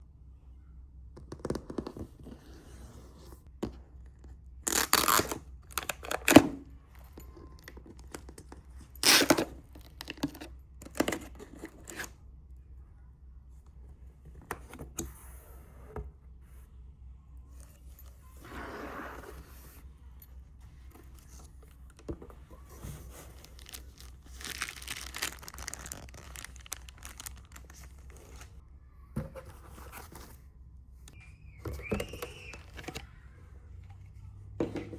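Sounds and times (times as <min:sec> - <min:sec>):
packaging tearing: 0:04.7 - 0:06.4, 0:23.4 - 0:28.5.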